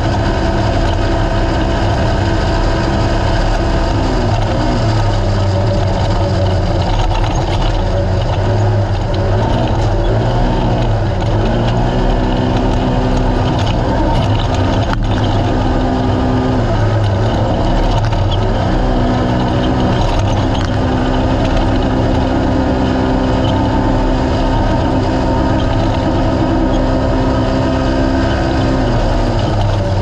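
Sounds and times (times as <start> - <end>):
race car engine running hard: 0.0 - 30.0
road and wind noise: 0.0 - 30.0.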